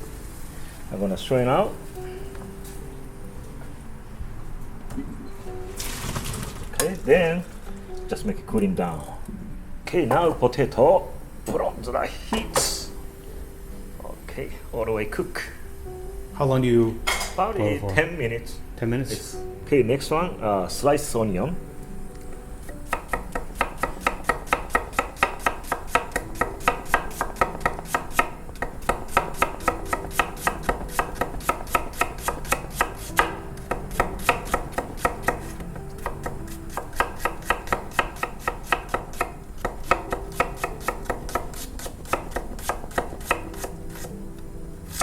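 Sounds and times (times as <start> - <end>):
knife slicing onion on cutting board: 22.7 - 44.2.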